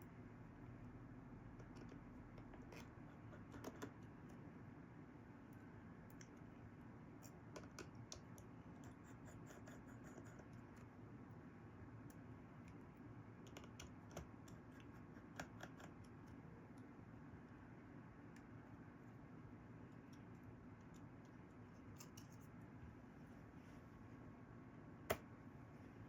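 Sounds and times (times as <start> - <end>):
screwdriver clicks and scrapes: 21.9 - 22.5.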